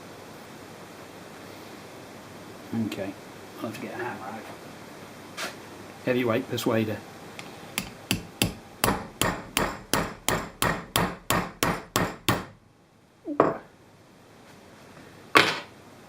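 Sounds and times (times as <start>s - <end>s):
hammer blows on metal: 7.8s - 12.6s.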